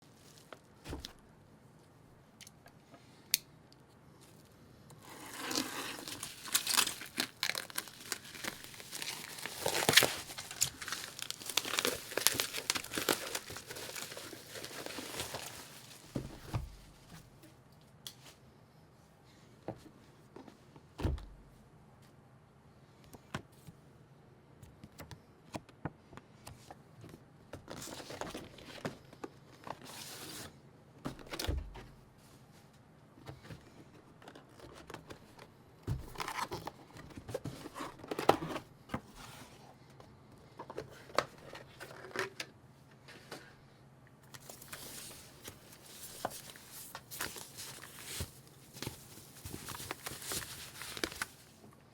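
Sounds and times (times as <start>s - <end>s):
packaging crinkling and tearing: 5.0s - 16.4s, 44.4s - 51.6s.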